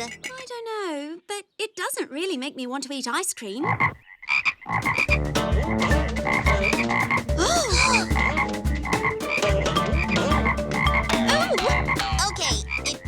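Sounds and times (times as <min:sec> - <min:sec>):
low thumps in steady beat: 0:04.8 - 0:13.0
whistle-like glides: 0:05.8 - 0:10.5.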